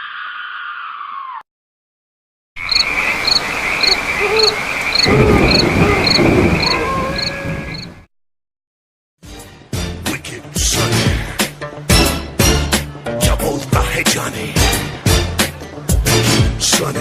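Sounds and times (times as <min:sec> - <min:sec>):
crickets chirping: 0:02.6 - 0:08.0
frogs croaking: 0:02.6 - 0:08.0
rain hiss: 0:02.6 - 0:08.0
low thunder rumble: 0:05.0 - 0:08.1.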